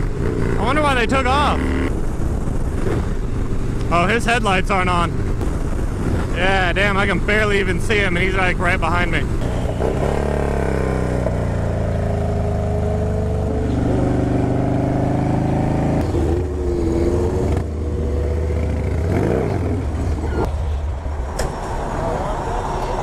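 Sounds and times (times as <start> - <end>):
wind rushing: 0.0 - 8.5
motorcycle engine running: 0.0 - 20.4.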